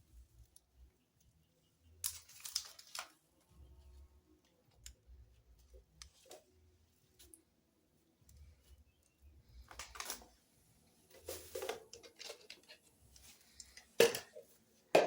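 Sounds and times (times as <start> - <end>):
household items rustling and clattering: 9.6 - 15.0.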